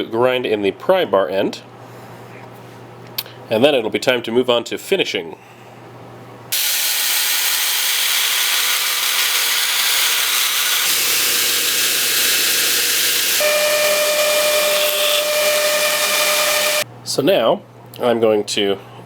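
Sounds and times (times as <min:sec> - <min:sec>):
power grinder grinding steel: 0:06.6 - 0:16.8
steady whining tones: 0:06.9 - 0:16.8.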